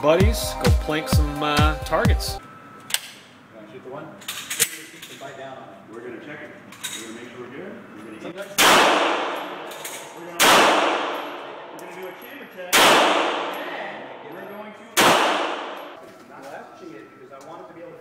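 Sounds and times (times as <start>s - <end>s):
gunshots echoing: 8.6s - 11.8s, 12.7s - 14.3s, 15.0s - 16.0s.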